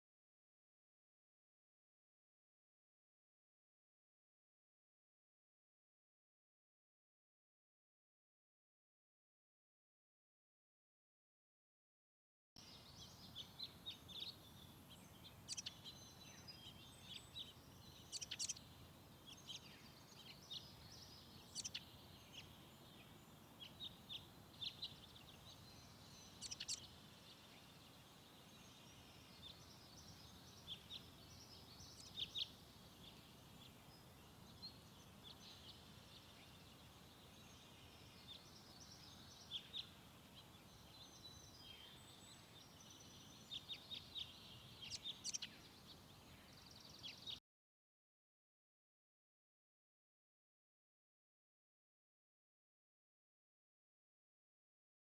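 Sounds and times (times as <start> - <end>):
faint steady hiss: 12.6 - 47.4
small birds chirping: 12.6 - 47.4.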